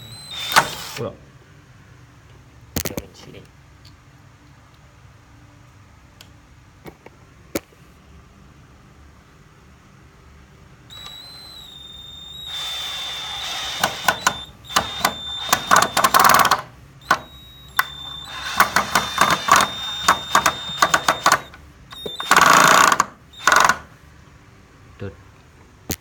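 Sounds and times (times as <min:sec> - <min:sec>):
drill clicking while driving screws: 0:00.0 - 0:01.0, 0:10.9 - 0:24.0
cordless drill motor whining: 0:00.0 - 0:01.1, 0:10.9 - 0:24.0.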